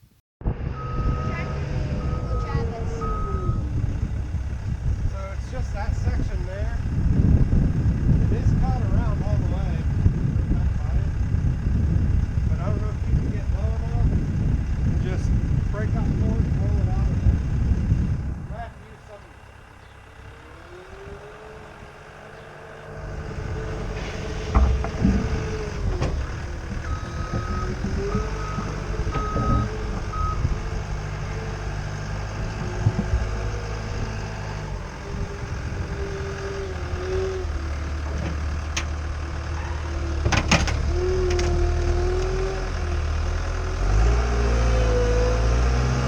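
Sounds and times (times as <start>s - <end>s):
skid steer engine droning: 0.4s - 46.0s
backup alarm beeping: 0.8s - 3.8s, 26.9s - 30.5s
sharp knocks and clanks: 24.1s - 30.1s, 40.2s - 41.6s.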